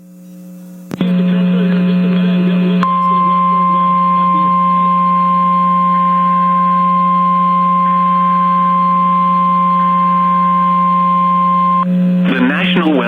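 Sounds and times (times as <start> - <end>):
steady low hum: 0.0 - 13.0
steady high alarm tone: 2.8 - 11.9.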